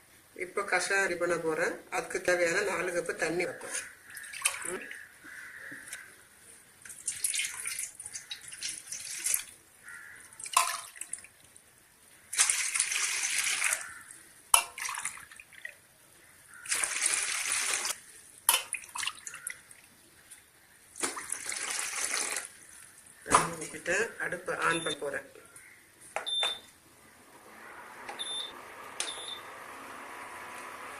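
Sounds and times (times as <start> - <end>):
water pouring into a pot: 6.9 - 9.5, 10.4 - 11.3, 12.3 - 13.9, 14.6 - 15.7, 16.6 - 19.6, 21.0 - 22.6.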